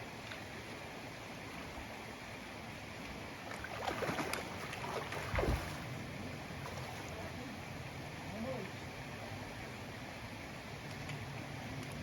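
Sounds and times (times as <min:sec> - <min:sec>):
creek water rushing: 0:00.0 - 0:12.0
splashing while wading: 0:03.4 - 0:05.9.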